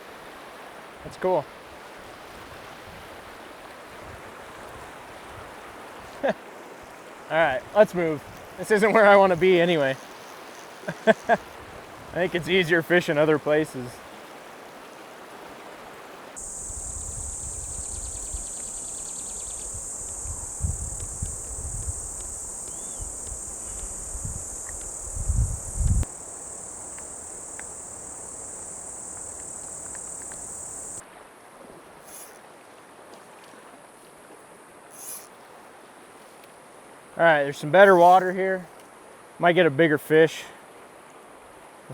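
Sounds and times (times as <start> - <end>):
river water running: 0.0 - 41.9
insects buzzing: 6.6 - 11.5, 16.4 - 31.0.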